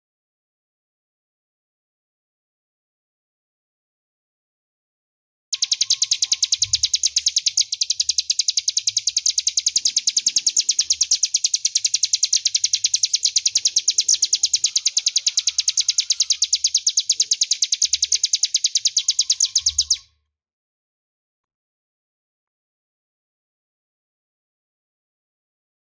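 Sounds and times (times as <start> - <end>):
bird singing high rattle: 5.5 - 20.1.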